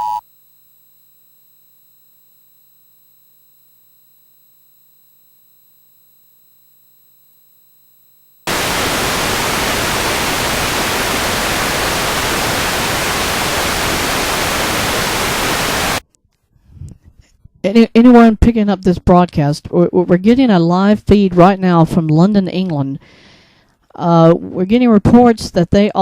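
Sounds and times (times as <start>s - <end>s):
white noise static hiss: 8.5s - 16.0s.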